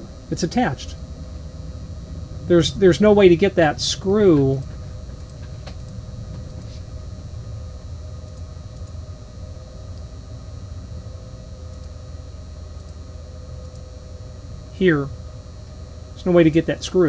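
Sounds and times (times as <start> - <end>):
faint hum: 0.0 - 17.0
low background rumble: 0.0 - 17.0
very faint ticks: 8.2 - 9.0, 12.8 - 13.0, 13.6 - 13.9.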